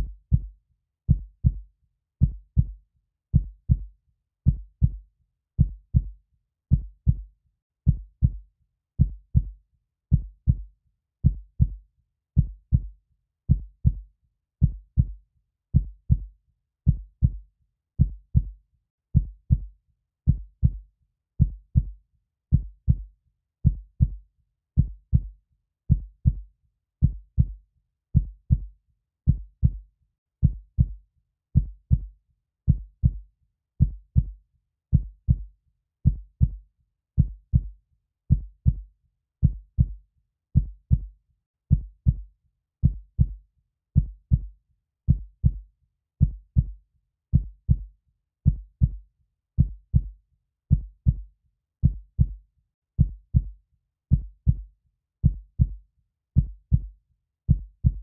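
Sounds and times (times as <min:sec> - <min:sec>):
heartbeat thumps: 0:31.6 - 0:32.1, 0:32.7 - 0:33.2, 0:33.8 - 0:34.3, 0:38.3 - 0:38.8, 0:40.6 - 0:41.1, 0:42.8 - 0:43.4, 0:44.0 - 0:44.5, 0:45.1 - 0:45.6, 0:47.4 - 0:47.8, 0:48.5 - 0:49.0, 0:49.6 - 0:50.1, 0:50.7 - 0:51.2, 0:51.8 - 0:52.4, 0:53.0 - 0:53.5, 0:54.1 - 0:54.6, 0:55.2 - 0:55.8, 0:56.4 - 0:56.9, 0:57.5 - 0:58.0.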